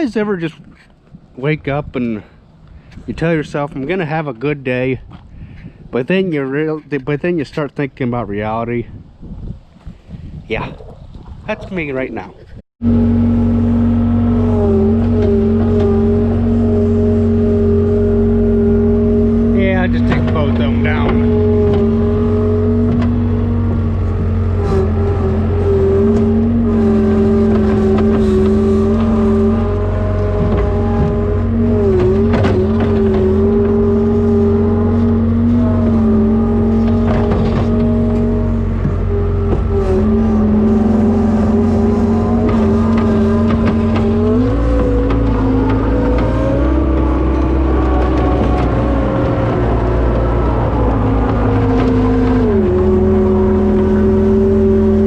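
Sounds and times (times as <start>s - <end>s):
diesel engine running: 12.8s - 55.0s.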